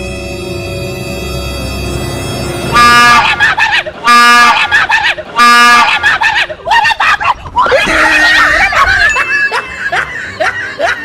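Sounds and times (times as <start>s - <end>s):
train horn blasts: 0.0s - 3.4s, 4.1s - 4.6s, 5.4s - 5.9s
people screaming and shrieking: 2.8s - 11.0s.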